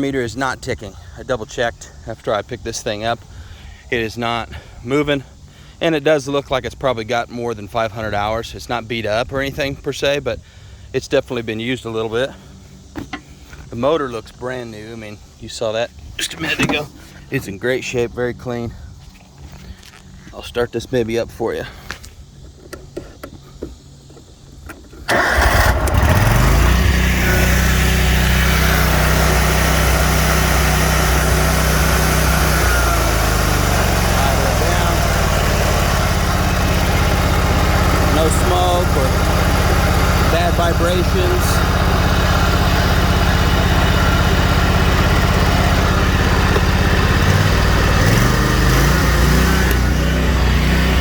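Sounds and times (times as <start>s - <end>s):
mower engine starting and running: 16.2s - 17.2s, 24.7s - 51.0s.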